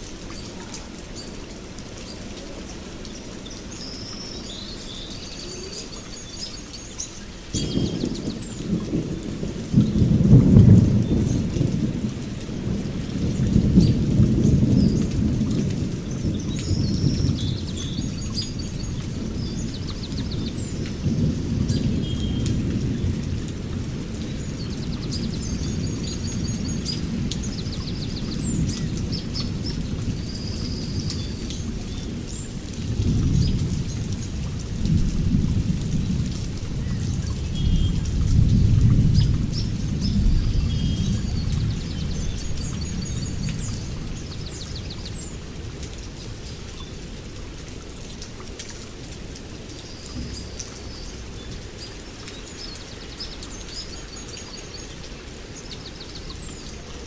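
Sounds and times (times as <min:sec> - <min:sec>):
steady rain: 0:00.0 - 0:57.0
birds chirping: 0:00.3 - 0:08.8
rolling thunder: 0:07.5 - 0:45.0.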